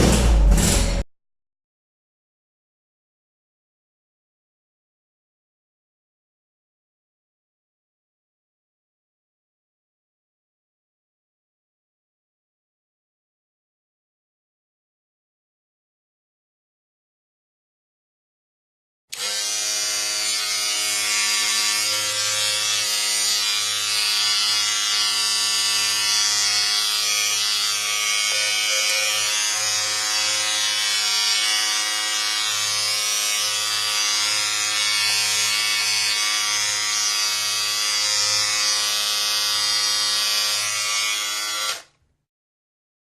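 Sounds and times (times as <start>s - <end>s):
harsh electric buzz: 19.1s - 41.9s.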